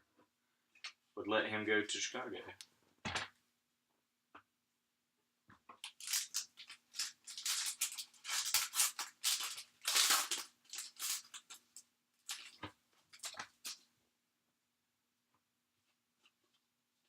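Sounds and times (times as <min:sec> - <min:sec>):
plastic wrapper crinkling and tearing: 0:05.8 - 0:13.8.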